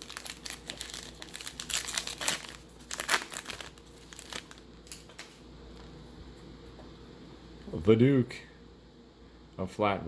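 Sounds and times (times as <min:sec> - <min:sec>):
card pack wrapper tearing and crinkling: 0:00.0 - 0:05.4.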